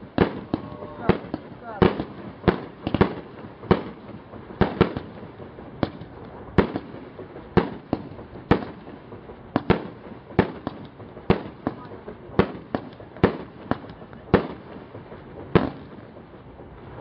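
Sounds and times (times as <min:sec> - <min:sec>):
firework bangs: 0:00.0 - 0:17.0.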